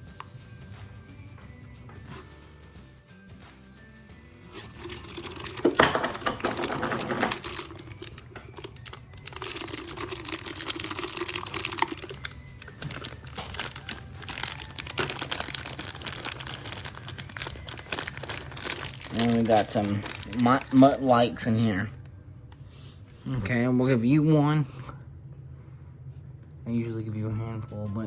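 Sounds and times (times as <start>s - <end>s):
dog crunching a hard treat: 4.5s - 21.3s.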